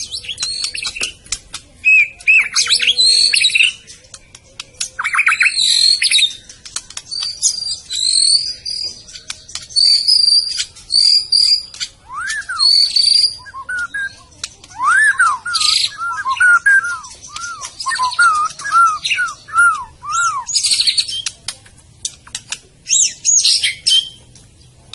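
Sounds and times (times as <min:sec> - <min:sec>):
bird singing whistled phrases: 0:00.0 - 0:01.1, 0:01.8 - 0:03.8, 0:05.0 - 0:06.5, 0:07.1 - 0:21.3
bird harsh buzzy chatters: 0:00.0 - 0:24.0.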